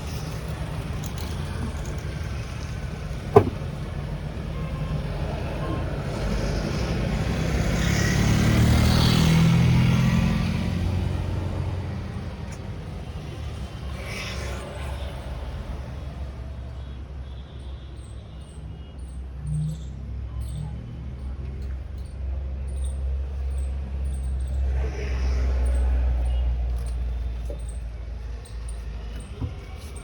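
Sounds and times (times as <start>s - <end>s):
traffic hum: 0.0s - 30.0s
vehicle passing close by: 5.8s - 12.4s.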